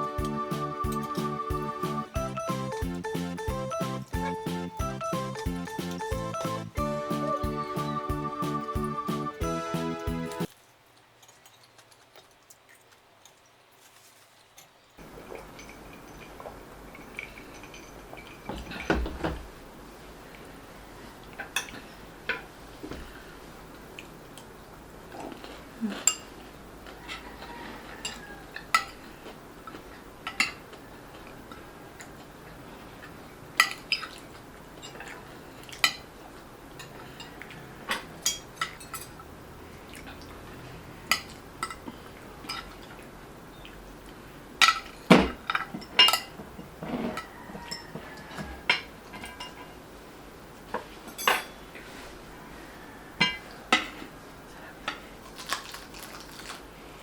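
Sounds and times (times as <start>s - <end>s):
cutlery clinking on plates: 36.8s - 39.2s, 51.1s - 51.6s.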